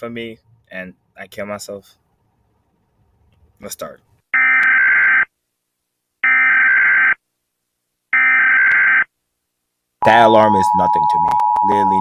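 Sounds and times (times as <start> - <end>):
emergency alert alarm beeps: 10.0 - 12.0.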